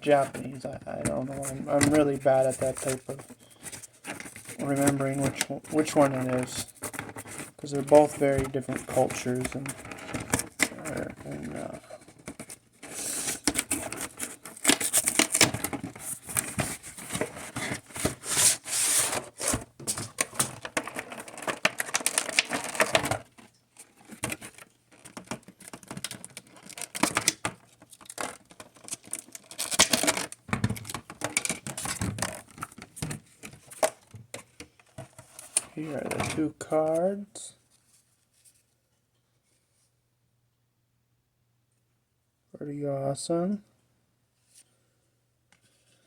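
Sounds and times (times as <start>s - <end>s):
packaging crinkling and tearing: 1.3s - 32.8s.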